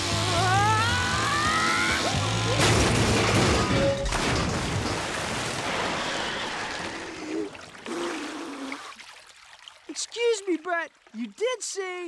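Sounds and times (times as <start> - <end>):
background music: 0.0 - 4.1.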